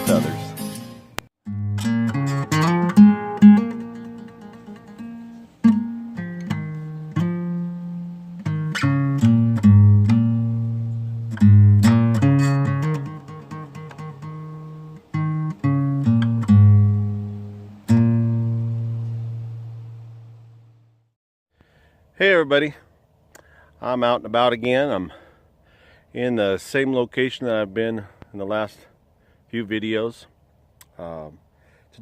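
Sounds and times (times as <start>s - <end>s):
acoustic guitar strumming chords: 0.0s - 20.8s.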